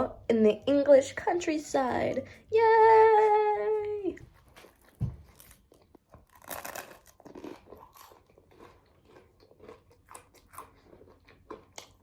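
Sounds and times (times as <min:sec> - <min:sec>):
person chewing crunchy toast: 0:04.3 - 0:12.0.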